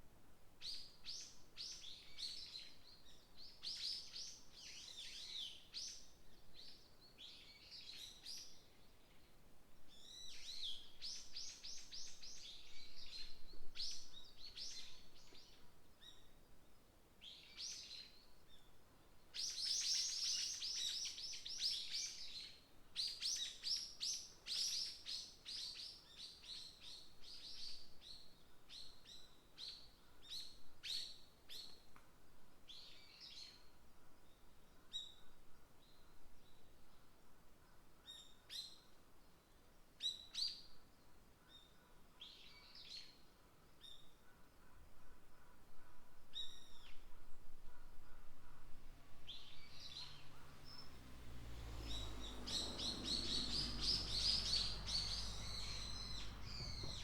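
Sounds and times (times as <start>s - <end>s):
songbirds chirping and trilling: 0.6s - 32.0s, 32.6s - 57.0s.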